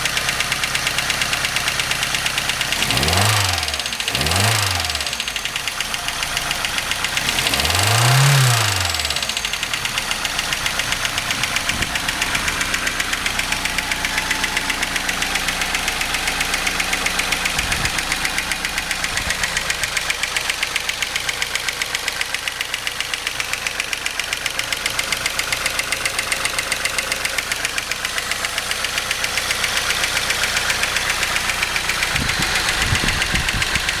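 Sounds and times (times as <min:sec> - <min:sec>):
engine idling with ticking knock: 0:00.0 - 0:34.0
car engine revving: 0:02.4 - 0:20.5.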